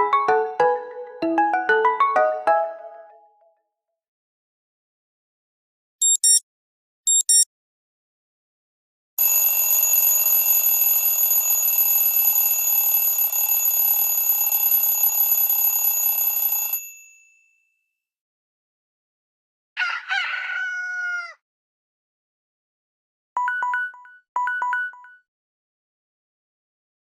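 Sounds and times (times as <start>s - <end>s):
sustained ringing phone tone: 9.2s - 17.3s.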